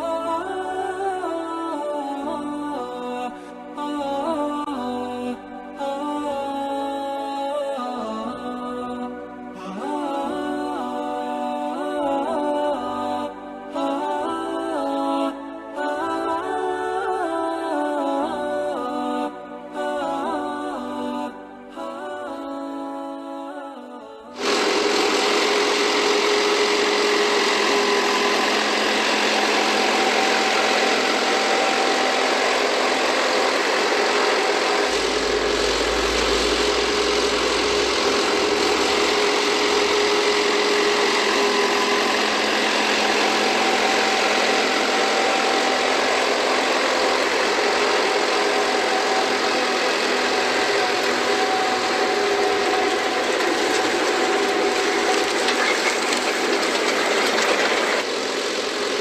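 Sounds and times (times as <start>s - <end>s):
faint steady whine: 24.4s - 57.1s
harvesting machinery humming: 24.4s - 59.0s.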